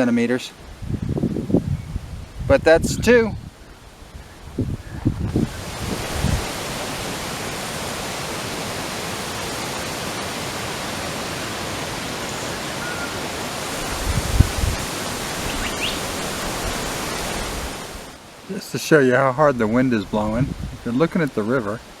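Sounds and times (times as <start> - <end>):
strong wind blowing: 0.6 - 9.3, 10.5 - 18.2, 19.4 - 21.0
wind buffeting microphone: 0.7 - 7.6, 13.6 - 18.1, 19.5 - 21.0.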